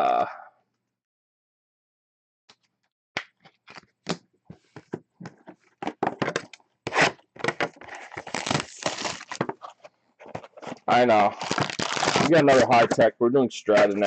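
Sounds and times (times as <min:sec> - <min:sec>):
trading card packaging crinkling: 0:07.7 - 0:13.0.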